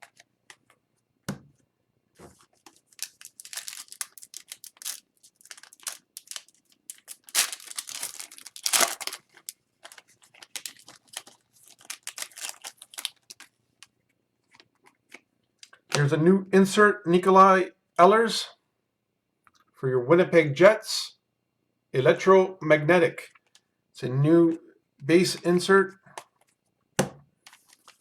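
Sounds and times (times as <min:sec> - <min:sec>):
cards rustling: 0:02.2 - 0:15.2, 0:27.5 - 0:28.0
plastic wrapper crinkling and tearing: 0:02.4 - 0:14.8, 0:27.5 - 0:28.0.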